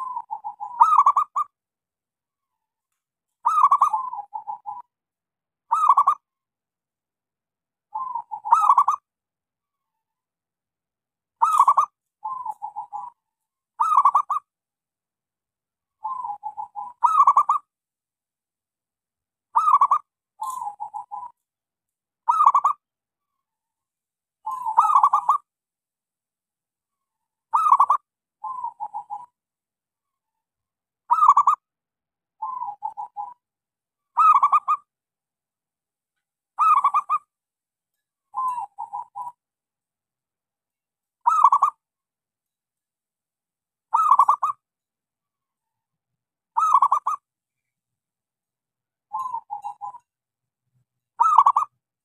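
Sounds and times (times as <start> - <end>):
dove cooing: 0.0 - 1.5, 3.4 - 4.9, 7.9 - 9.0, 11.4 - 13.2, 16.0 - 17.6, 19.6 - 21.4, 24.4 - 25.4, 27.5 - 29.4, 32.4 - 33.4, 38.3 - 39.4, 43.9 - 44.6, 46.6 - 47.2, 49.1 - 50.0, 51.2 - 51.7.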